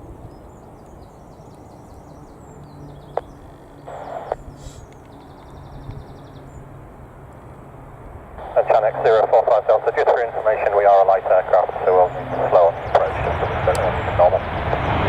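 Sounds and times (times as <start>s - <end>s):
low wind rumble: 0.0s - 15.0s
small birds chirping: 0.1s - 6.8s, 10.4s - 15.0s.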